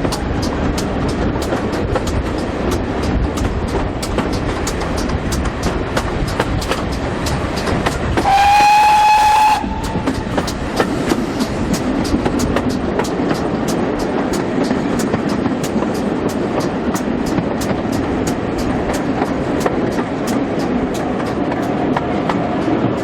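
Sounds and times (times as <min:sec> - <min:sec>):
steam train clattering: 0:00.0 - 0:23.0
steam whistle: 0:08.2 - 0:10.2.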